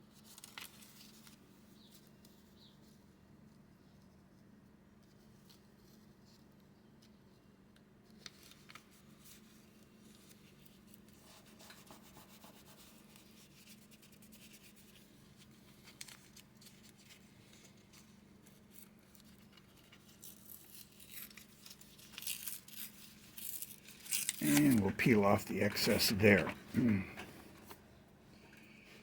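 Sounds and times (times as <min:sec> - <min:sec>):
paper scratching and rustling: 0:00.1 - 0:02.1, 0:08.1 - 0:26.6
paper crinkling: 0:00.1 - 0:02.4, 0:08.1 - 0:12.2, 0:12.9 - 0:27.9.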